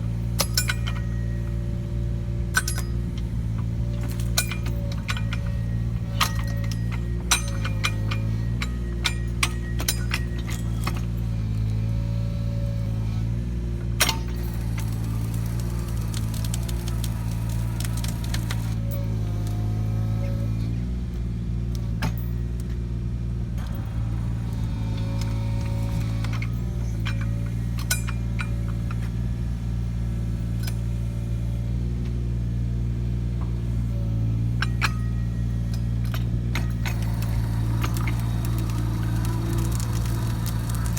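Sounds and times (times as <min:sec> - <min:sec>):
diesel engine running: 0:00.0 - 0:40.9
wood cracking as log splits: 0:14.3 - 0:19.7, 0:36.9 - 0:40.9.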